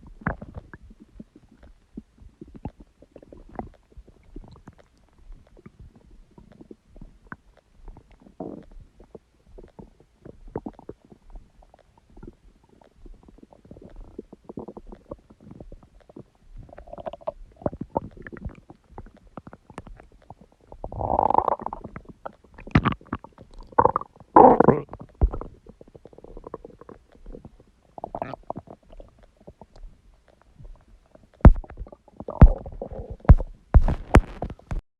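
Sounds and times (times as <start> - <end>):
stomach rumbling and gurgling: 0.0 - 34.8
small pops and clicks: 6.4 - 34.8.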